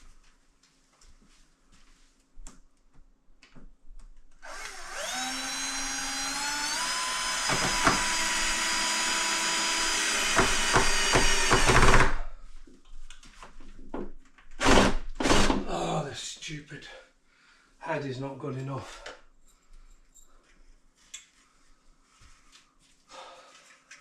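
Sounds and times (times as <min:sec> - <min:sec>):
drill bit slipping clicks: 0:04.4 - 0:05.2
power drill motor whine: 0:04.4 - 0:12.2.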